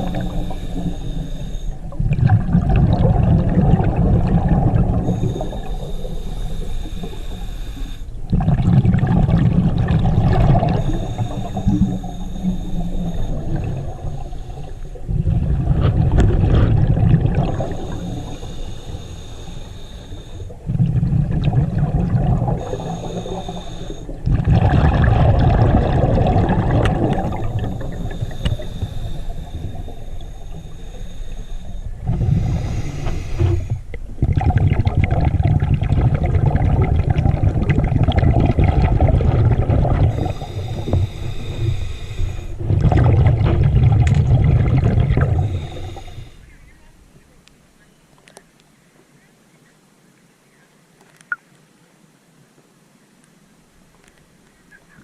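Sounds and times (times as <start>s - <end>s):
diver exhaling bubbles through regulator: 0.0s - 46.5s.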